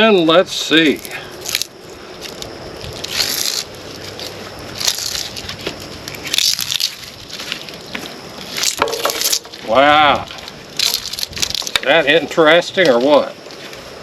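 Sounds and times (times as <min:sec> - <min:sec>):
plastic insulation crackling: 0:10.3 - 0:12.0.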